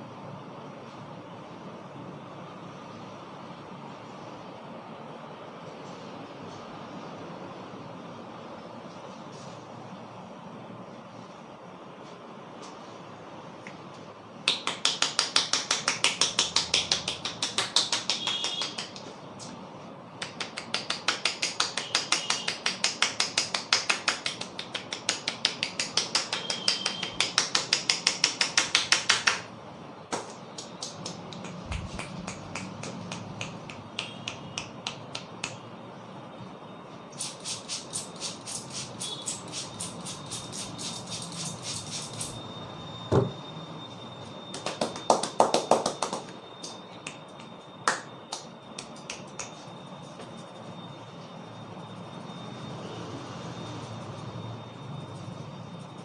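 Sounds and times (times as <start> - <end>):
hands slapping on head: 14.5 - 19.1, 20.2 - 29.5, 30.1 - 35.6, 44.6 - 46.3.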